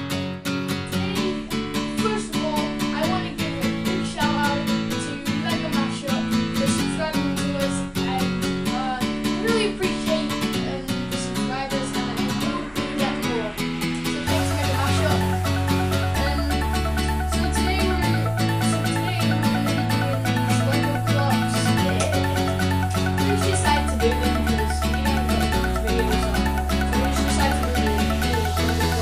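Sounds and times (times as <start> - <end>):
strummed acoustic guitar music: 0.0 - 29.0.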